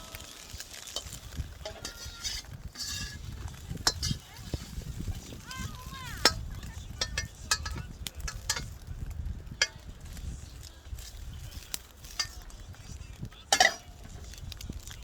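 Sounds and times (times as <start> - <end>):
metal utensil clinking on wok: 0.5 - 4.7, 6.2 - 8.8, 11.7 - 12.5, 13.5 - 14.0.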